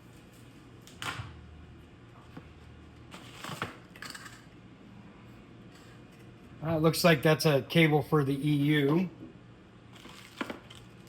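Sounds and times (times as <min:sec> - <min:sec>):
faint room hum: 0:00.0 - 0:11.0
packaging rustling: 0:09.9 - 0:11.0.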